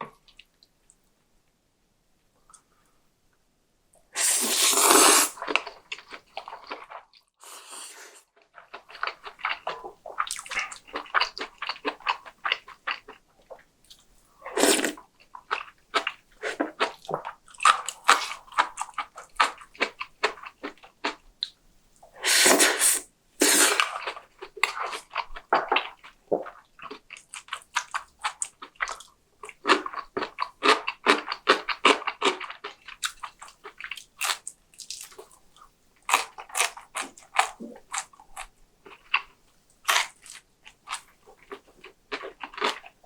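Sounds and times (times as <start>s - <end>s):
person slurping: 4.2s - 5.5s, 7.4s - 8.2s, 14.5s - 15.0s, 22.2s - 23.9s
wet chewing and crunching: 5.4s - 7.3s, 8.4s - 21.6s, 23.6s - 43.0s.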